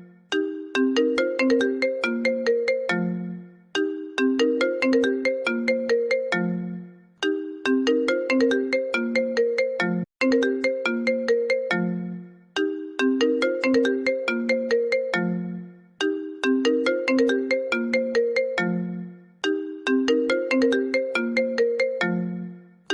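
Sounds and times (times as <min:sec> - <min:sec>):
phone ringtone melody: 0:00.0 - 0:22.9.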